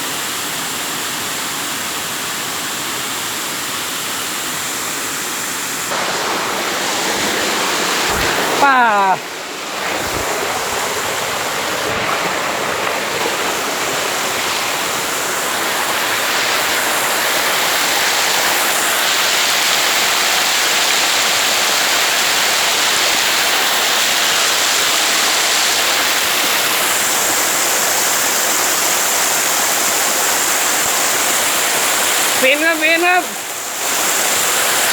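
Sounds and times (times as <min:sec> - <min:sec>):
waterfall rushing: 0:00.0 - 0:34.9.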